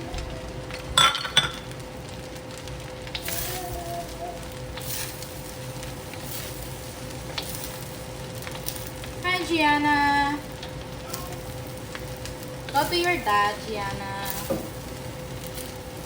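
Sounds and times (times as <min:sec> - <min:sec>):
food sizzling in a wok: 0:00.0 - 0:16.0.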